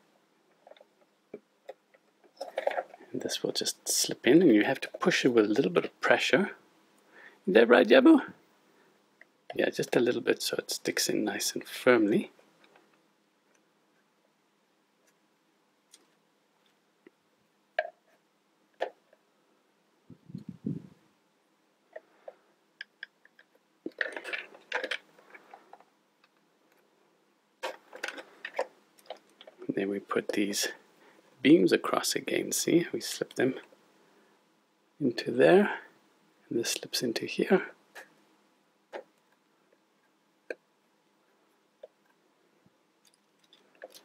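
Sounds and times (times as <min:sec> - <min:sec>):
plastic toy pieces clicking: 0:22.8 - 0:25.8.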